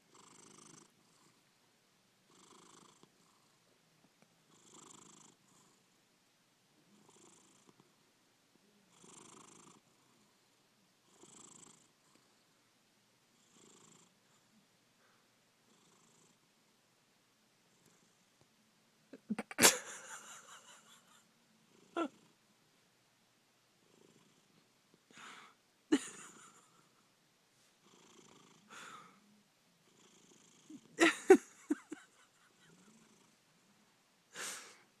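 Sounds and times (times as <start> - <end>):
cat snoring: 0.0 - 1.4, 2.3 - 3.6, 4.5 - 5.9, 6.9 - 7.8, 8.9 - 10.3, 11.0 - 12.4, 13.4 - 14.2, 15.7 - 16.4, 17.7 - 18.3, 23.8 - 24.6, 27.8 - 29.2, 29.8 - 31.0, 32.6 - 33.4.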